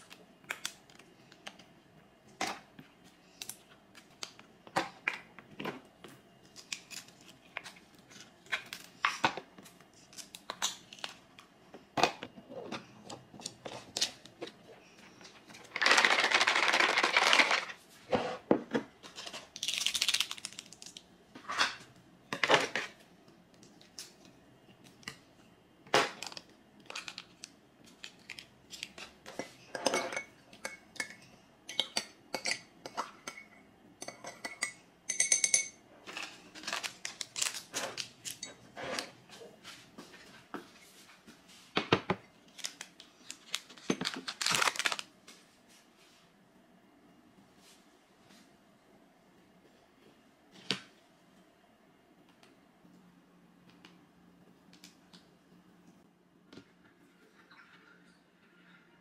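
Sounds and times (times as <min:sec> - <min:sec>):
dishes and utensils clinking: 0:29.3 - 0:36.3.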